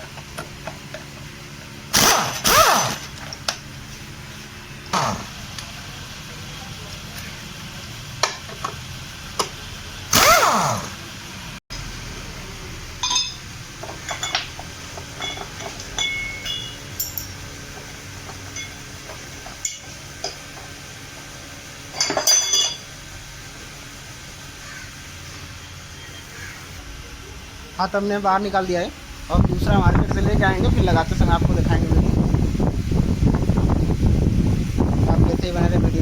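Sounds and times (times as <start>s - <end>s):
metallic ringing: 12.9s - 17.6s, 18.4s - 20.4s, 21.9s - 23.0s
metal tools clinking: 13.0s - 20.7s, 21.9s - 23.0s.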